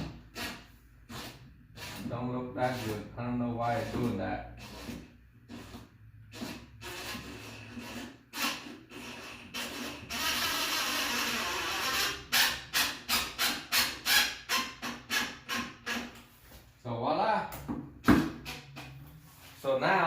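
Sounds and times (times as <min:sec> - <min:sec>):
receptacle scraping against wall box: 0:00.0 - 0:12.7.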